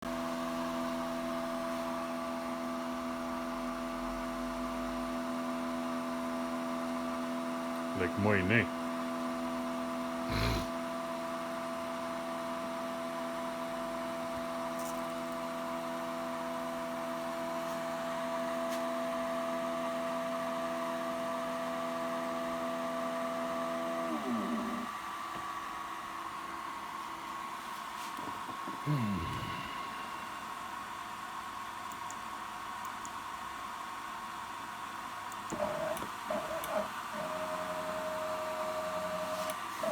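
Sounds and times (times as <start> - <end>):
faint hum: 10.3 - 10.8, 23.9 - 33.2
click: 31.9 - 32.2.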